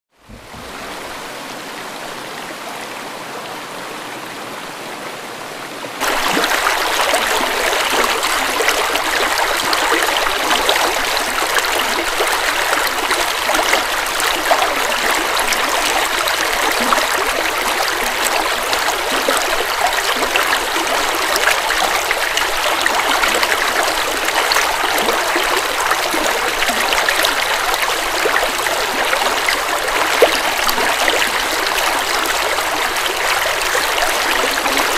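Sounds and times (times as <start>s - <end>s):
river water flowing: 0.2s - 34.9s.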